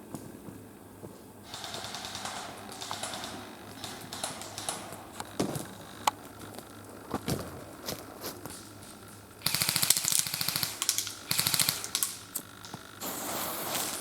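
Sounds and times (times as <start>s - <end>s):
airsoft gun full-auto bursts: 1.4s - 5.2s, 9.4s - 12.4s.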